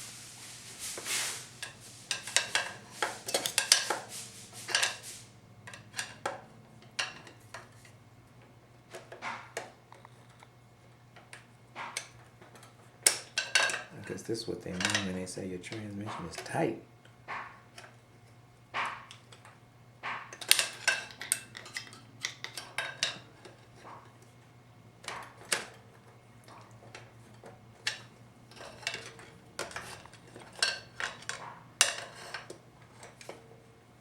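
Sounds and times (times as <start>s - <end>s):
steady low hum: 0.0s - 5.8s.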